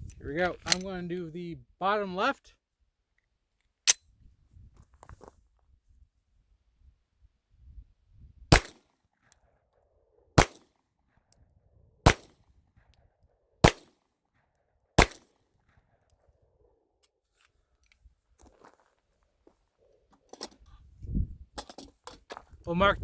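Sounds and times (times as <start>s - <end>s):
pistol shots with echo: 8.5s - 8.8s, 10.4s - 10.6s, 12.1s - 12.4s, 13.6s - 13.9s, 15.0s - 15.3s.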